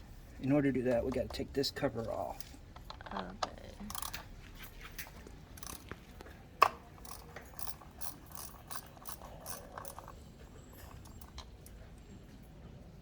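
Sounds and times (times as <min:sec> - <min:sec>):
ratchet wrench clicking: 0:03.9 - 0:04.2, 0:05.6 - 0:05.9, 0:07.0 - 0:10.2.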